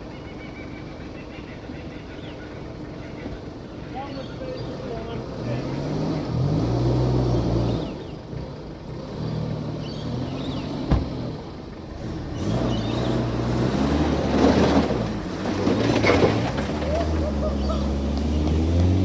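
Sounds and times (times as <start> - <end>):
off-road engine revving: 0.0 - 19.0
tyre and ground noise: 1.8 - 19.0.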